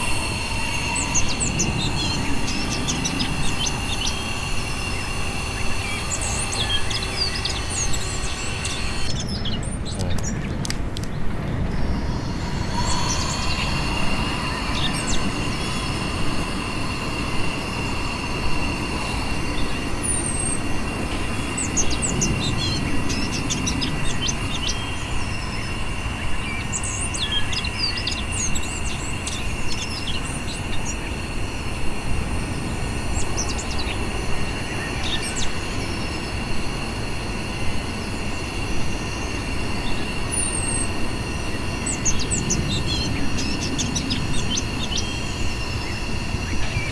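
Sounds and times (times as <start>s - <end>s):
bird chirps: 0.0s - 31.2s
air pump whining: 0.0s - 46.9s.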